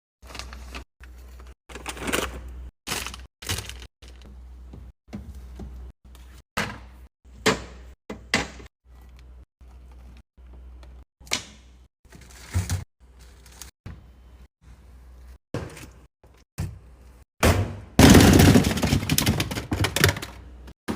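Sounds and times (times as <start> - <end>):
fridge doors opening and shutting: 11.2 - 14.2, 15.5 - 20.9
containers clacking onto shelves: 18.0 - 20.5.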